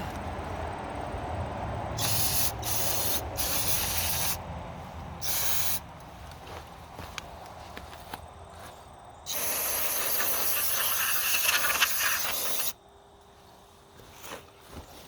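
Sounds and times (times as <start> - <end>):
pressurised spray hissing: 2.0 - 4.4, 5.2 - 5.8, 9.3 - 12.8.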